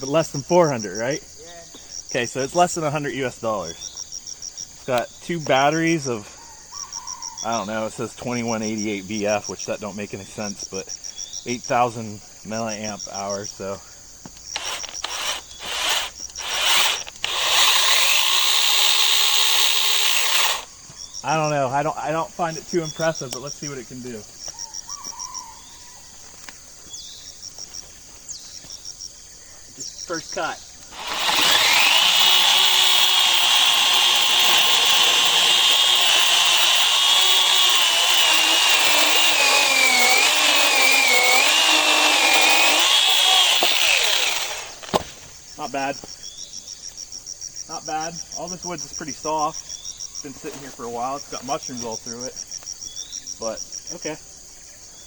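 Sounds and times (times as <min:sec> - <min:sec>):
crickets chirping: 0:00.0 - 0:43.3
electric chainsaw running: 0:14.5 - 0:20.7, 0:30.9 - 0:45.0.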